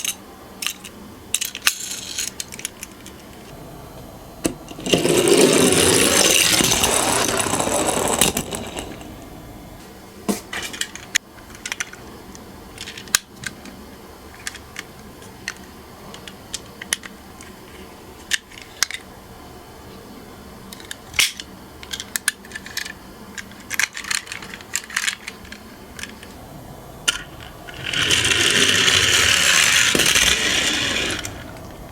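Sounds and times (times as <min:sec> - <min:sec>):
toy cars rattling down track: 0:00.0 - 0:02.9, 0:04.8 - 0:09.0, 0:21.2 - 0:26.3, 0:27.1 - 0:31.6.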